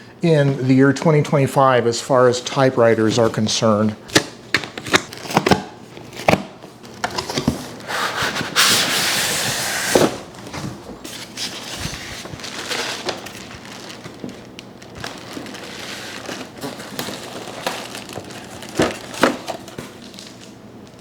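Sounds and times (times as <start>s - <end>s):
cardboard rustling: 4.5s - 21.0s
cardboard sliding scrape: 7.3s - 13.6s.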